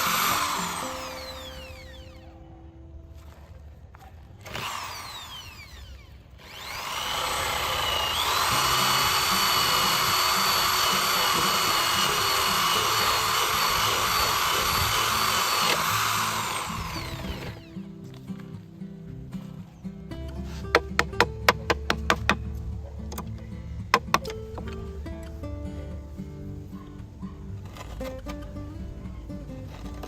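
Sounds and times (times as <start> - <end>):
electric hand drill running: 0.0 - 2.4, 4.4 - 17.9.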